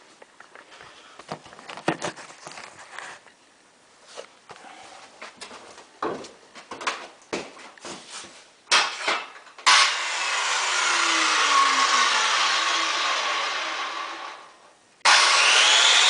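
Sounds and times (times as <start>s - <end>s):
knocks and clatters of handling: 0.2s - 3.4s, 5.1s - 9.6s
circular saw cutting wood: 9.6s - 16.0s.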